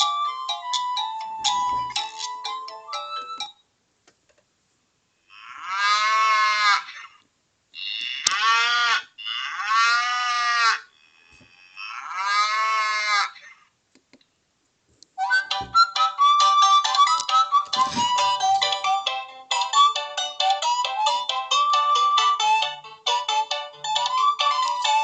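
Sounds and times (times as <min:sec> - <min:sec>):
electronic ringtone melody: 0:00.0 - 0:03.6, 0:15.2 - 0:25.0
cow moo ringtone: 0:07.8 - 0:12.9.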